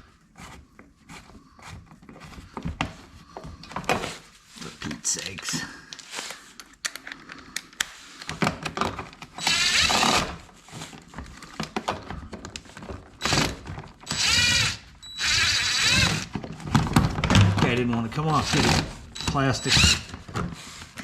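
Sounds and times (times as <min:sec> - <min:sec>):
cordless driver whining: 0:09.4 - 0:10.4, 0:13.2 - 0:16.4, 0:18.4 - 0:20.2.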